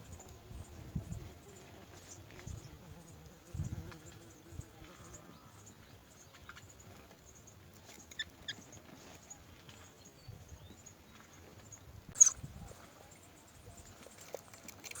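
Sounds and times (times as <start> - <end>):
birds scratching and tapping: 6.3 - 10.0, 13.9 - 15.0
high squeaks: 12.2 - 12.4.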